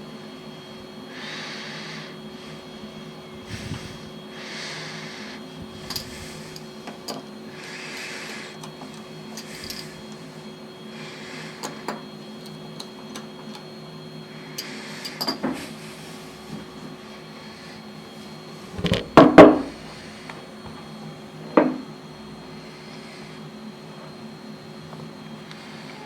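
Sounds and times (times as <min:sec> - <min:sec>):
low machine hum: 0:00.0 - 0:13.1, 0:15.8 - 0:26.0
clicks and knocks: 0:18.8 - 0:19.7.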